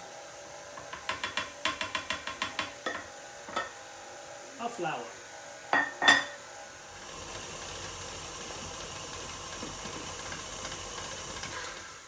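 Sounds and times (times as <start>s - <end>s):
electric mixer running: 6.7s - 12.0s.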